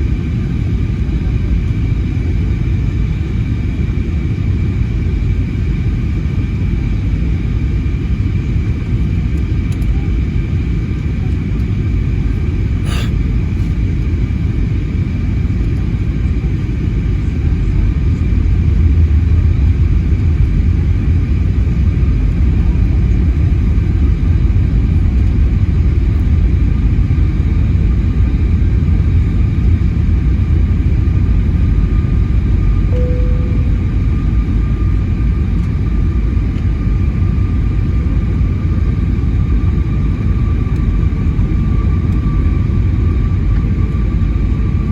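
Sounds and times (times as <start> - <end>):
jet engine and airflow rumble: 0.0 - 44.9
faint steady whine: 32.9 - 34.7.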